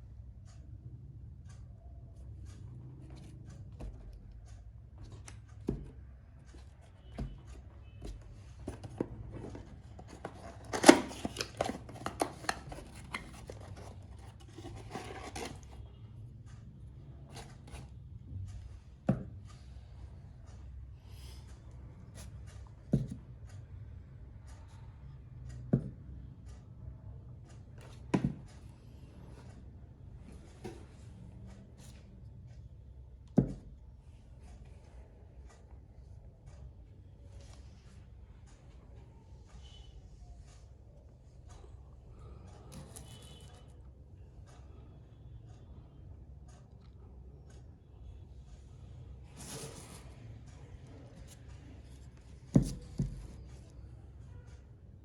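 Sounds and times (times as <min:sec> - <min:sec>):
objects tapping and knocking: 0:03.1 - 0:15.8, 0:22.9 - 0:23.4, 0:27.8 - 0:28.6, 0:33.3 - 0:33.8, 0:49.4 - 0:53.8.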